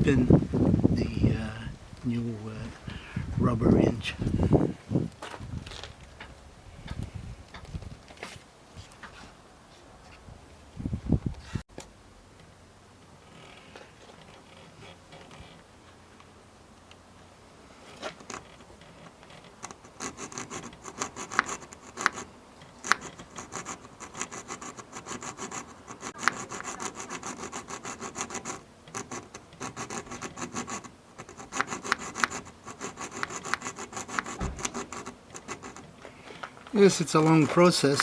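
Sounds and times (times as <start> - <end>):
hand saw scraping strokes: 19.8 - 36.2.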